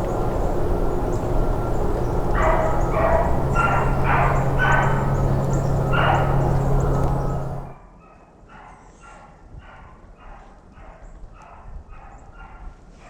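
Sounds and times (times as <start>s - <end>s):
dog baying: 0.0s - 7.8s
steady rushing noise: 0.0s - 7.8s.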